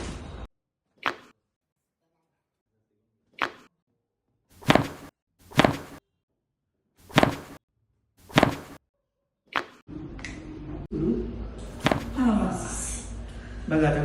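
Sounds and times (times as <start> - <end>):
sharp whacking strikes: 7.1 - 7.6, 8.3 - 8.8.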